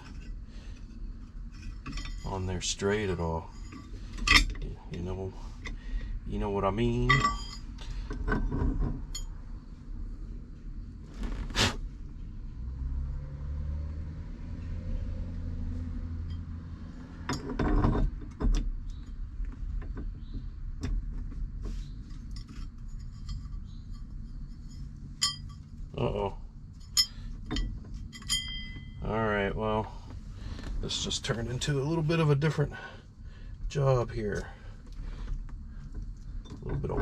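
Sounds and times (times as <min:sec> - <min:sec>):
metal parts clinking: 0:06.9 - 0:09.3, 0:22.2 - 0:25.9, 0:26.7 - 0:29.0
rustling: 0:11.0 - 0:12.0.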